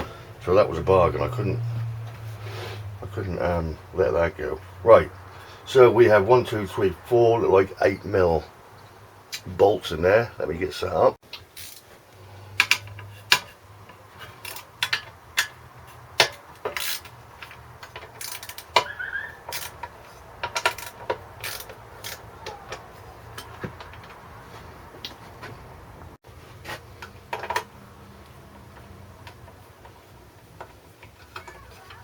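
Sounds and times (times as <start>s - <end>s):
metal tools clinking: 14.2s - 22.3s
socket ratchet clicking: 16.2s - 17.2s, 17.8s - 22.3s.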